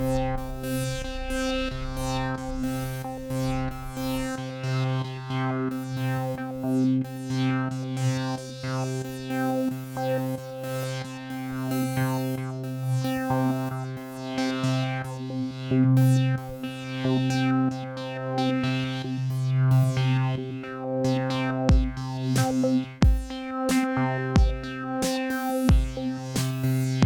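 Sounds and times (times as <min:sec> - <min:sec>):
synthesizer low held note: 0:00.0 - 0:05.4.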